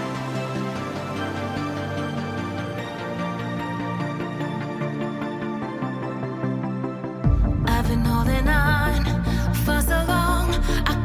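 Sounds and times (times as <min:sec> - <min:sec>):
soft instrumental music: 0:00.0 - 0:11.0.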